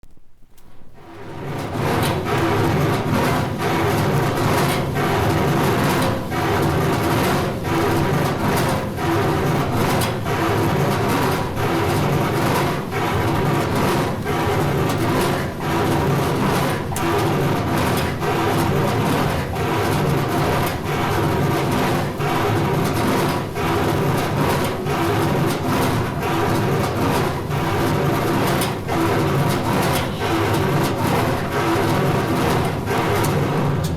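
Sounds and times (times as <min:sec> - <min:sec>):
heavy machinery running: 0:27.6 - 0:33.9.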